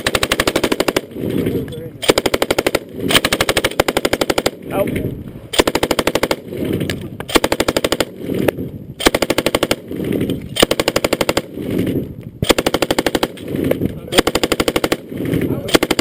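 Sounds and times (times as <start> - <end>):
machine gun firing bursts: 0.0 - 4.6, 5.6 - 16.0
gunfire echo: 5.5 - 16.0.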